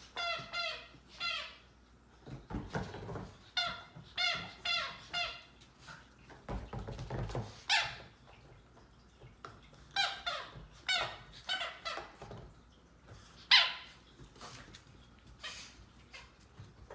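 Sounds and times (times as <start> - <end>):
squeaky dog toy squeaks: 0.0 - 1.6, 3.5 - 5.5, 10.0 - 12.1, 13.5 - 13.9.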